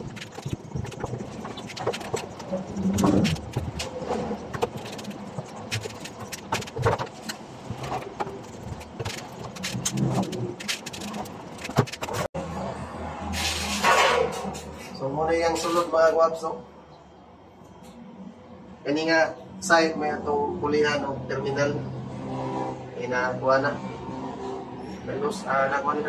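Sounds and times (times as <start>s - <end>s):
tools clicking and knocking on metal: 0.0s - 12.3s.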